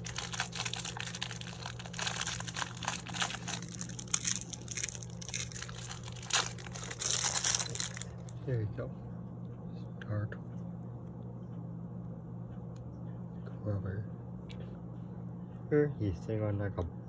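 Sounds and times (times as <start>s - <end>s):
crinkly packaging rustling: 0.0s - 8.4s.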